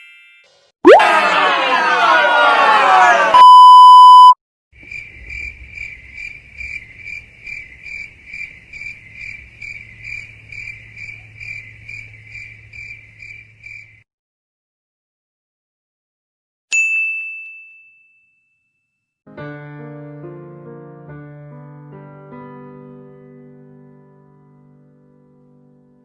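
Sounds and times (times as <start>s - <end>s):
censor bleep: 3.4s - 4.4s
crickets chirping: 4.8s - 14.0s.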